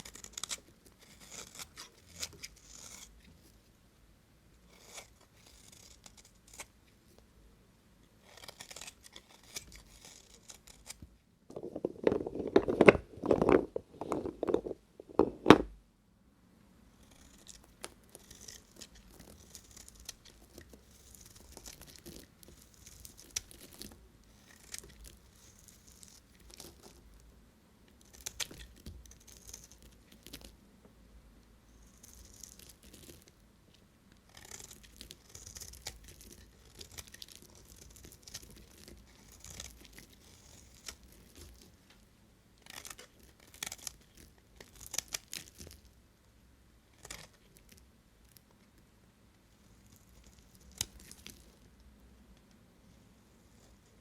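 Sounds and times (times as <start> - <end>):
knife cutting soap: 0.0 - 3.5, 4.6 - 6.8, 8.2 - 15.7, 17.0 - 27.1, 27.9 - 30.5, 31.8 - 33.3, 34.2 - 41.8, 42.6 - 45.9.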